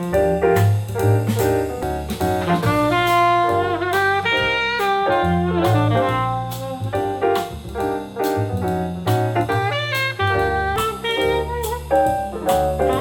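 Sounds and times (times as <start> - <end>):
bass line: 0.0 - 13.0
drums: 0.0 - 13.0
horn melody: 2.4 - 7.6, 9.4 - 13.0.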